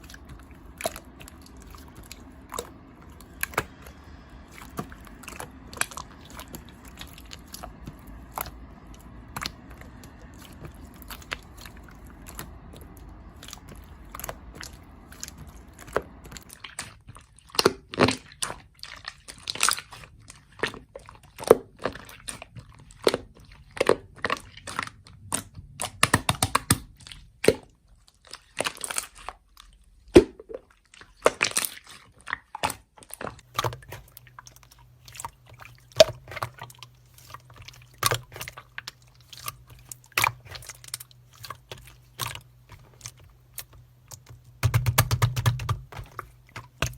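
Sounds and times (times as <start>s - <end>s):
sticky clicks and pops: 40.2s - 46.9s.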